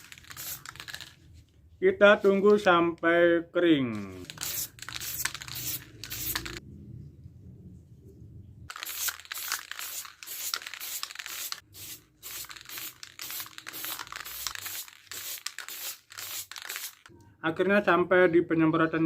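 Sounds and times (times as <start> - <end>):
aerosol can spraying: 0.0 - 1.1, 4.2 - 6.6, 8.7 - 17.1.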